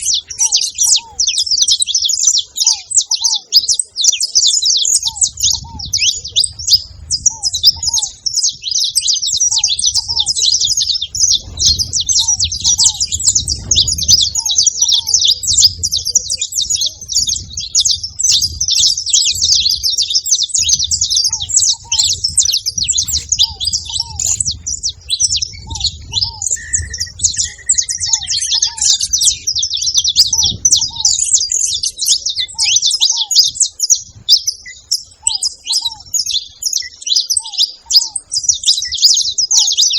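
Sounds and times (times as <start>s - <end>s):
finches chirping: 0.0s - 39.9s
short lower bird notes: 20.6s - 31.3s
brief bird whistle: 25.6s - 29.5s.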